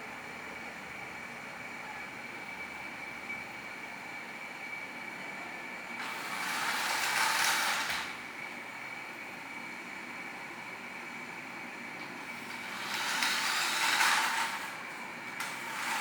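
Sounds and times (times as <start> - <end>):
toy car motor whirring: 6.0 - 8.2, 12.4 - 16.0
rolling noise: 6.0 - 8.4, 12.0 - 16.0.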